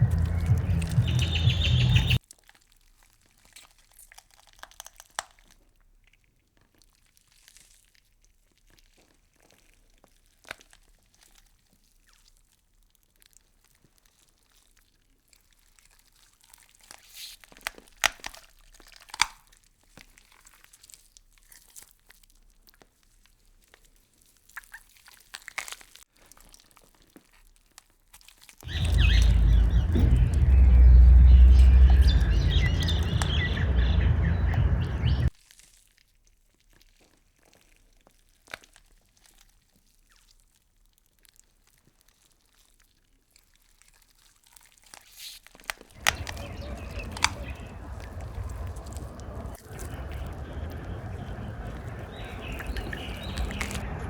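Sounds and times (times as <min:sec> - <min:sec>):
insects chewing leaves: 0:46.0 - 0:53.8.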